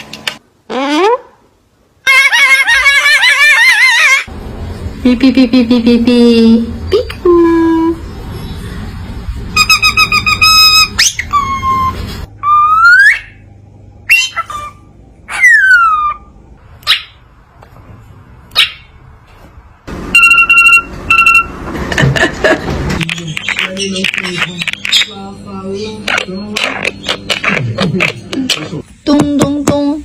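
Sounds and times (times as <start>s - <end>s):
parrot whistling: 9.6s - 13.4s, 14.1s - 17.2s, 20.2s - 21.5s.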